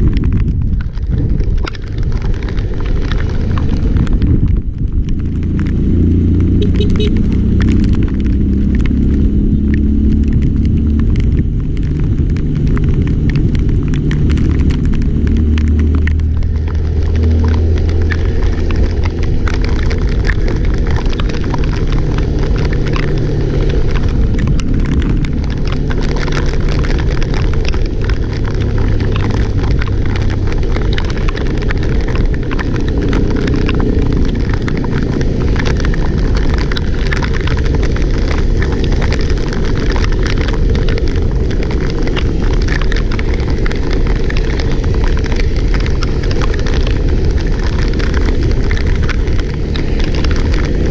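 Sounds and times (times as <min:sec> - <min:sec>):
vehicle engine running: 0:00.0 - 0:50.9
wind buffeting microphone: 0:00.0 - 0:50.9.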